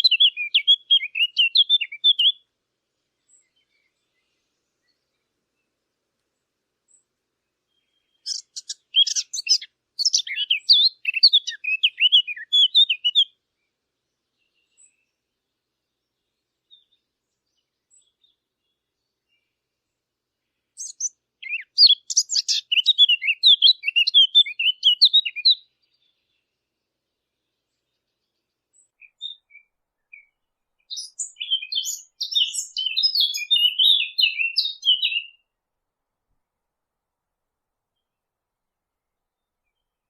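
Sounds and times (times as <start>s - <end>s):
warbler singing high warbling notes: 8.2s - 13.2s.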